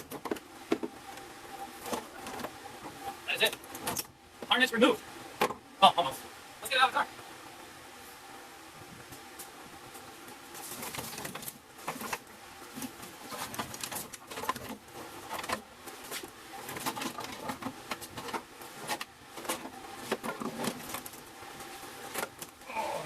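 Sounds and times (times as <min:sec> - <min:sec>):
wiring harness rustling and clacking: 0:10.5 - 0:22.6.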